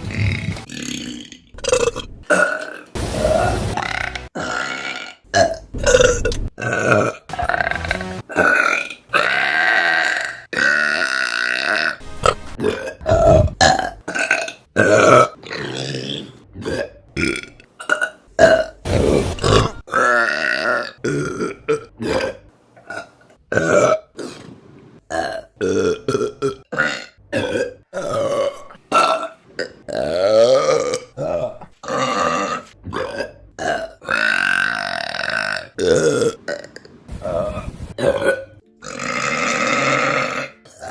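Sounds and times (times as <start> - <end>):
women burping: 38.0 - 40.9.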